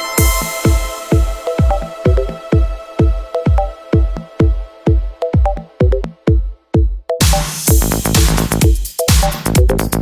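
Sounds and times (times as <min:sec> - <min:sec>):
synth melody: 0:00.0 - 0:07.4
electronic dance music: 0:00.0 - 0:10.0
steady kick drum: 0:00.2 - 0:10.0.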